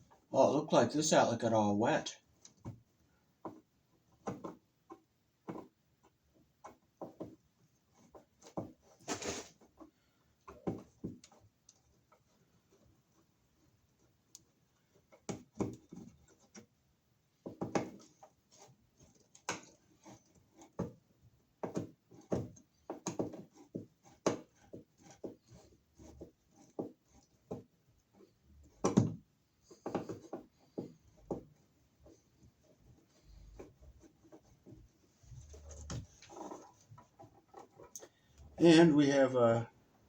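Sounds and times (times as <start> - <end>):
wall receptacle clicks and knocks: 21.6 - 32.2.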